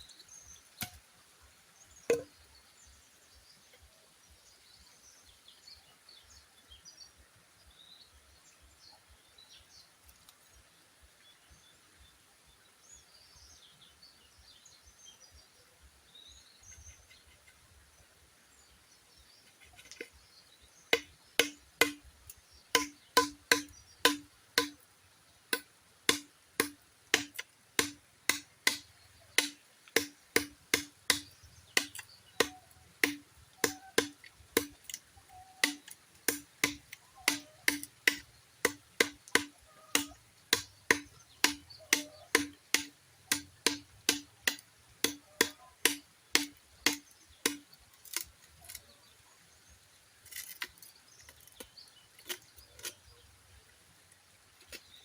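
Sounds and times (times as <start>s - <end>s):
faint birds chirping: 0.0s - 55.0s
hollow knocks on bamboo: 0.8s - 1.0s, 2.1s - 2.4s, 20.9s - 22.1s, 22.7s - 24.8s, 25.5s - 35.0s, 35.6s - 48.3s.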